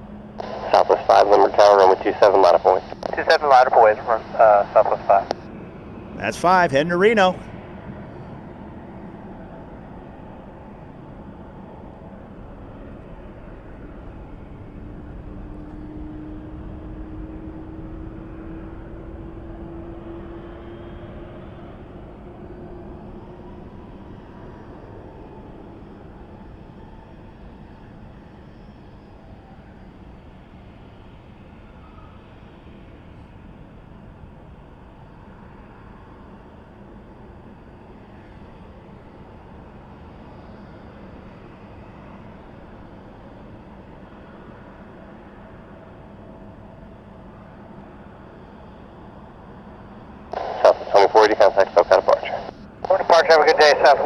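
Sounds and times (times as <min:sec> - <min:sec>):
distant jet engine: 0:00.0 - 0:26.2, 0:47.5 - 0:54.0
jet engines running: 0:00.3 - 0:07.5, 0:50.3 - 0:54.0.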